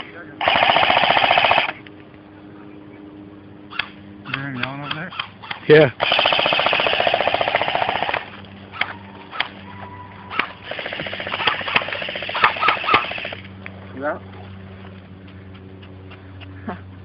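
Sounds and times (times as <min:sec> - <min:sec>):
airsoft guns firing full-auto: 0:00.4 - 0:01.8, 0:06.0 - 0:09.5, 0:10.3 - 0:13.4
single airsoft shots: 0:10.3 - 0:13.4.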